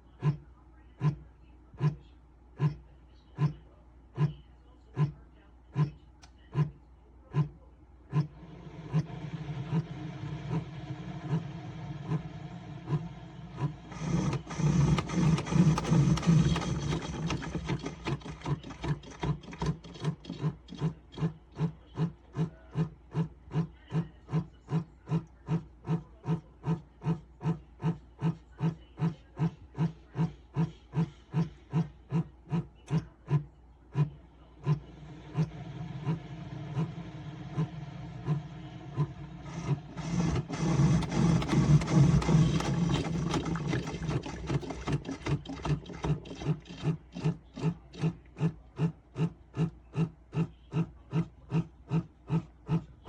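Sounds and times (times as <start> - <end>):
coffee maker water pump pulsing: 0.0 - 53.0
coffee maker hum: 2.6 - 53.0.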